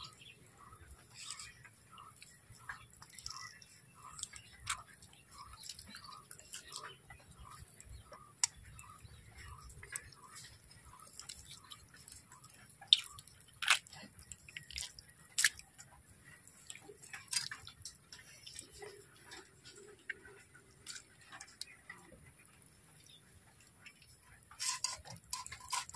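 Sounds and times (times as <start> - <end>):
blade cutting wet flesh: 12.9 - 14.0.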